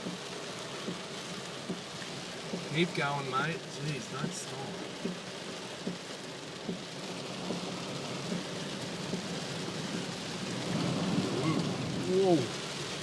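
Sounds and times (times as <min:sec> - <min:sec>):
heavy rain on car: 0:00.0 - 0:13.0.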